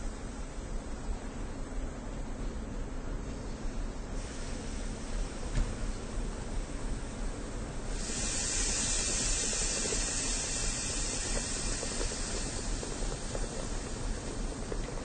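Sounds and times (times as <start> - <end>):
train releasing pressure hiss: 4.0 - 15.0.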